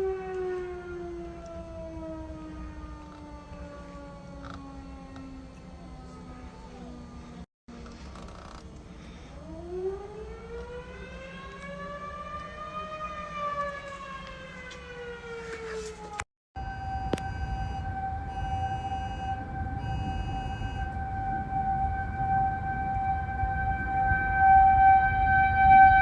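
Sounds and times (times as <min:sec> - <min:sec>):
tornado sirens steady tone: 0:00.0 - 0:26.0
warning siren winding up and down: 0:00.0 - 0:26.0
phone emergency alert beeps: 0:16.6 - 0:21.0.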